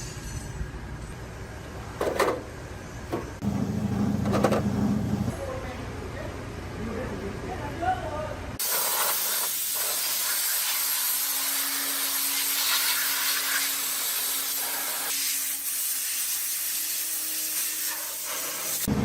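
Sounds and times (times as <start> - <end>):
hissing spray: 8.6 - 18.9.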